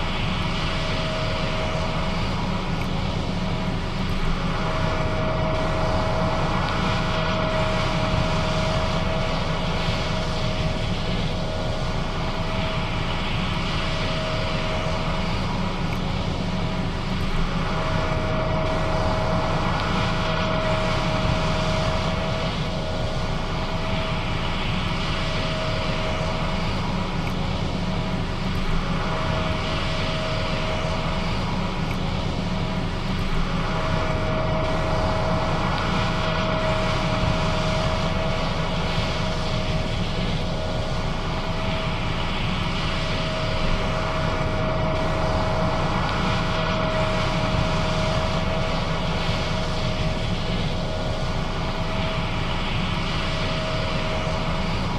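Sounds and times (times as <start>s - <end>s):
combine harvester engine drone: 0.0s - 54.9s
high steady whine: 0.0s - 54.9s.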